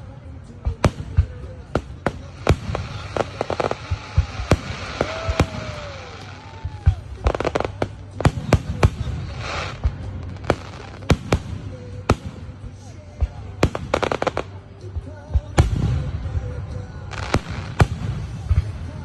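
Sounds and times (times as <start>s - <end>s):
fireworks crackling: 0.0s - 19.0s
fireworks bangs: 0.5s - 19.0s
fireworks hiss: 0.8s - 14.9s.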